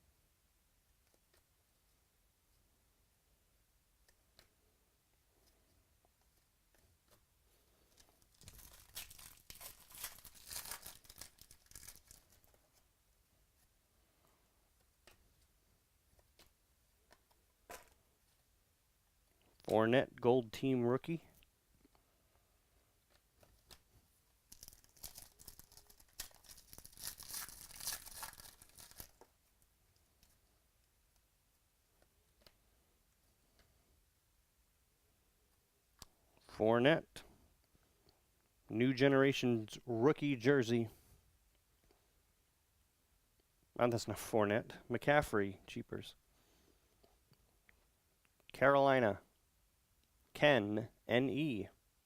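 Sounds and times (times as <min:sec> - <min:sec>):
card pack wrapper tearing: 0:08.3 - 0:12.5, 0:24.5 - 0:29.3.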